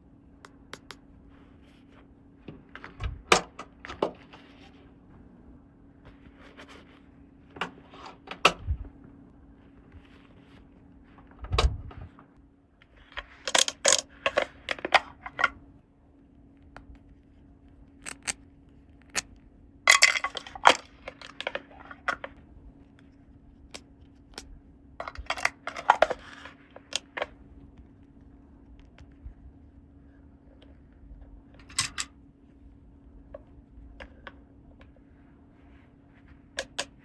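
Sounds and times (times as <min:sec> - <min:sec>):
faint steady hum: 0:00.0 - 0:37.0
plastic toy pieces clicking: 0:13.4 - 0:14.8.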